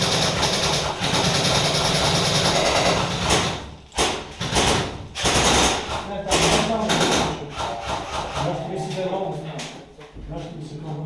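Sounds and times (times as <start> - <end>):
airsoft gun full-auto bursts: 0.0 - 8.5.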